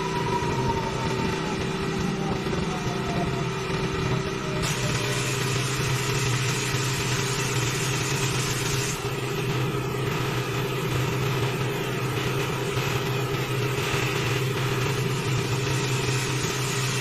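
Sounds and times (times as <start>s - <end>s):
pressure washer engine running: 0.0s - 17.0s
water jet hissing: 4.6s - 14.7s.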